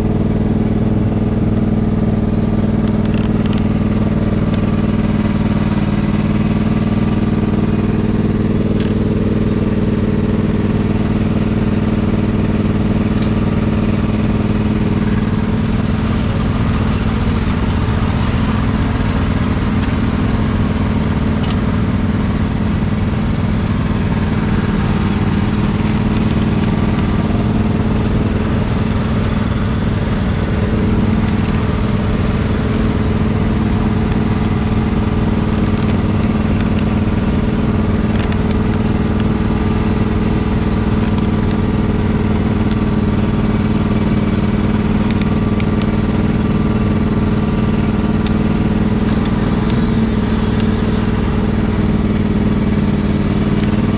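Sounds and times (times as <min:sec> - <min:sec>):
riding lawn mower engine running: 0:00.0 - 0:53.9
rattle: 0:14.6 - 0:22.3, 0:24.1 - 0:38.7.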